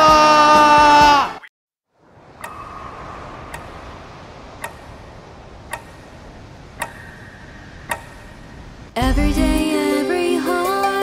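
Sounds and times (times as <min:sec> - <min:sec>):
faint steady hiss: 0:01.9 - 0:11.0
clock ticking: 0:02.4 - 0:02.6, 0:04.6 - 0:05.0, 0:05.6 - 0:08.4.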